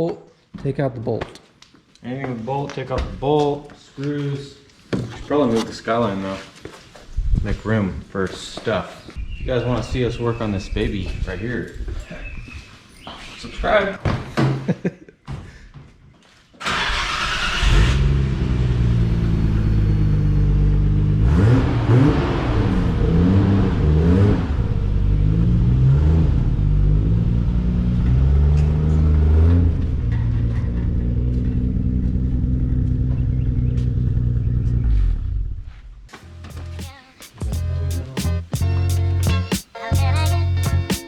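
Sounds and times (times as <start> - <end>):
car engine starting and revving: 16.6 - 35.6.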